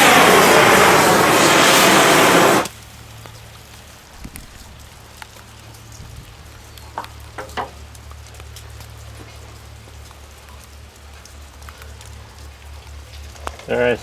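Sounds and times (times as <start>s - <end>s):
welder engine humming: 0.0s - 3.8s
welding sizzle and pops: 0.0s - 14.0s.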